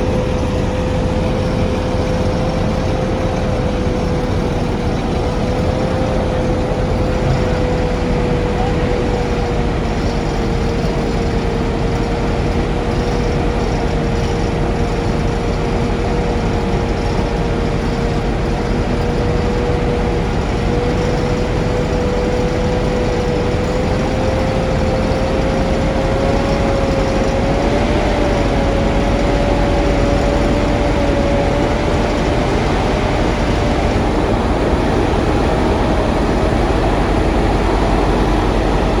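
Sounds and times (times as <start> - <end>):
road and traffic noise: 0.0 - 39.0
vehicle engine running: 0.0 - 39.0
droning tone rising in pitch: 23.1 - 39.0.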